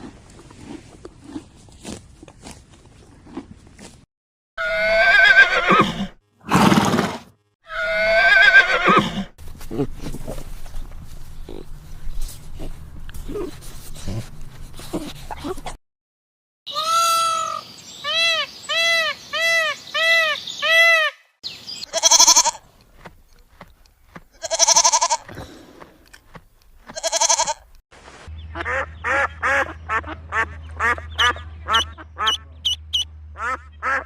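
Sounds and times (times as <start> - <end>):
animal bleating: 16.7 - 17.6, 21.8 - 22.6, 24.4 - 25.4, 26.9 - 27.6
duck quacking rapidly: 28.5 - 34.0.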